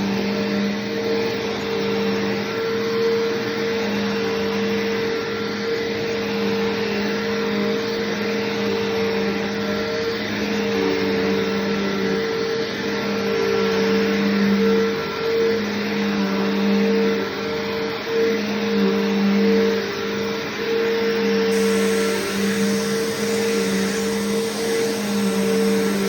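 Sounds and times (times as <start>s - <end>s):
vacuum cleaner running: 21.5s - 26.0s.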